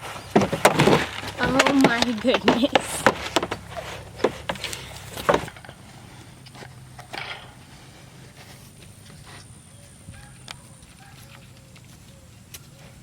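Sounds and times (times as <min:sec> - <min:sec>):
sharp knocks and clatters: 0:00.0 - 0:05.8
clicks and scuffling: 0:00.0 - 0:09.5.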